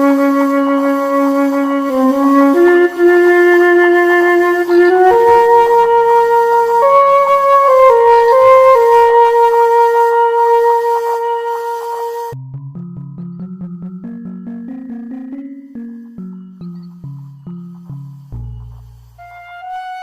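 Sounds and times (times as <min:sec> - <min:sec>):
flute-like wind instrument melody: 0:00.0 - 0:12.4, 0:19.2 - 0:20.0.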